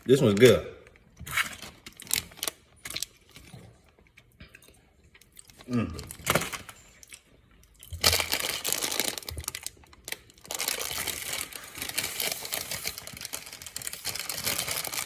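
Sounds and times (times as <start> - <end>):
candy wrapper crinkling: 0.0 - 3.5, 7.9 - 15.0.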